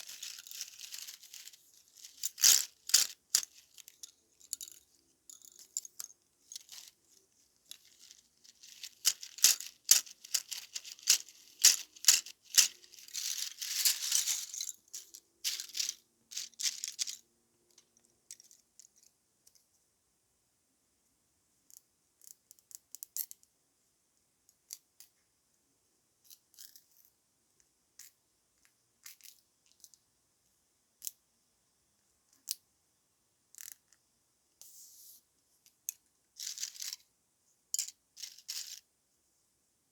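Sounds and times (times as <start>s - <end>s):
dry straw crackling and rustling: 0.0s - 4.8s, 6.5s - 17.2s.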